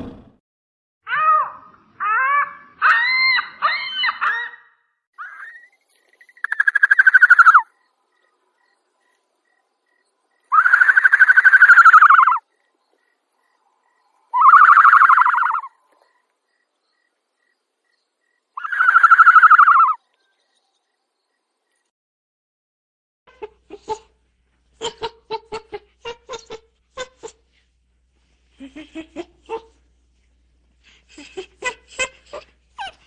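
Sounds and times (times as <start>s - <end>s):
animal calling: 1.1s - 5.7s, 6.4s - 7.7s, 10.5s - 12.5s, 14.3s - 16.2s, 18.6s - 20.0s.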